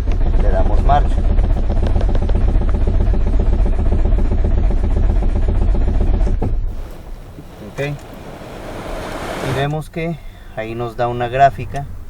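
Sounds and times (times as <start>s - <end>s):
car engine cranking on starter: 6.7s - 9.8s.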